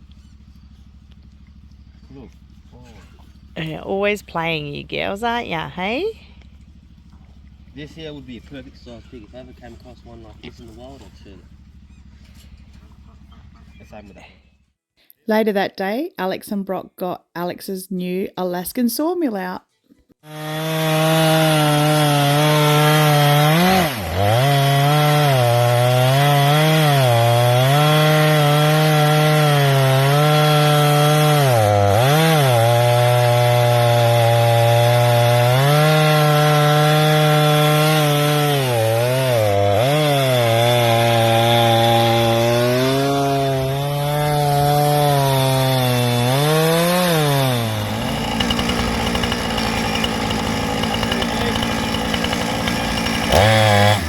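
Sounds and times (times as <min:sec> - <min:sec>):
chainsaw cutting log: 0:20.2 - 0:54.0.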